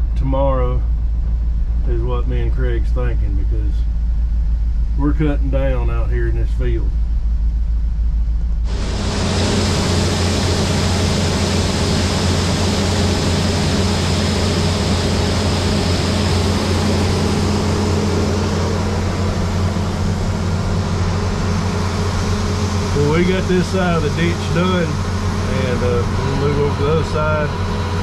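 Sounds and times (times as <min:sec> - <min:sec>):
combine harvester droning: 0:00.0 - 0:28.0
faint high whine: 0:08.7 - 0:28.0.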